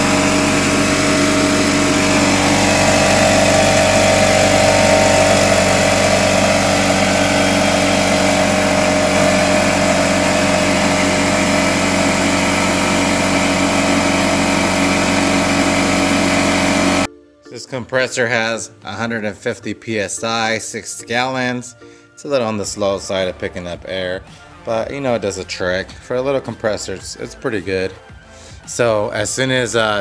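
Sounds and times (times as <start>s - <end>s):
air compressor running: 0.0s - 17.1s.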